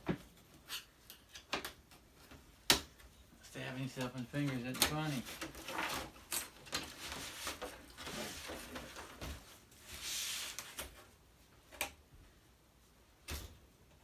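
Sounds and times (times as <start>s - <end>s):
plastic parts clicking and scraping: 3.9s - 9.4s
rustling scrape: 4.3s - 11.0s.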